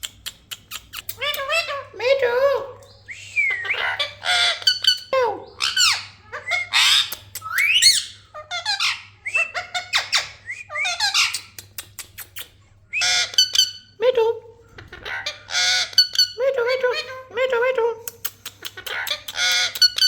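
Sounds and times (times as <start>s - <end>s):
sharp clicks: 0.0s - 1.3s, 7.1s - 7.7s, 18.1s - 20.0s
parakeet squawking: 0.6s - 11.6s, 13.0s - 14.0s, 14.7s - 17.7s, 18.7s - 20.0s.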